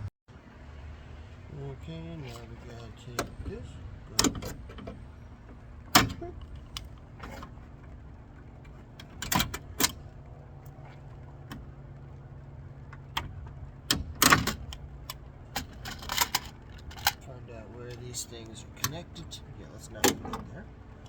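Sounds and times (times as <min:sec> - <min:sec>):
low steady hum: 0:00.0 - 0:21.0
clicks and clinks of car parts: 0:04.1 - 0:11.7, 0:12.9 - 0:17.3, 0:17.9 - 0:19.2, 0:20.0 - 0:20.6.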